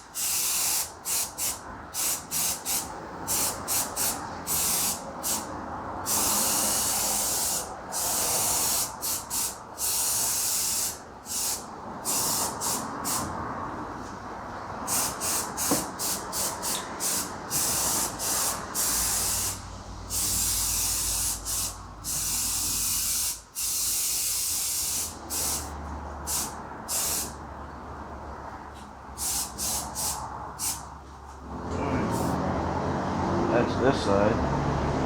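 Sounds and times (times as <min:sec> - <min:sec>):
aerosol can spraying: 0:00.1 - 0:05.5, 0:06.1 - 0:13.3, 0:14.9 - 0:25.7, 0:26.3 - 0:27.3, 0:29.2 - 0:30.8.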